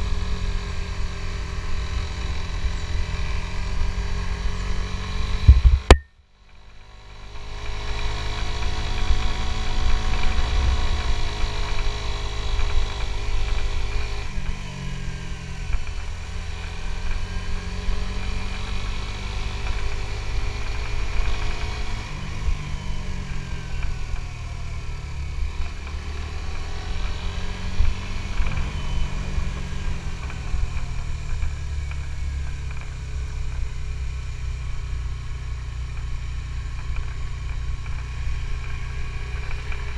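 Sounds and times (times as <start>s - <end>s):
motorcycle engine revving: 0.0s - 39.9s
sharp click: 5.5s - 6.1s.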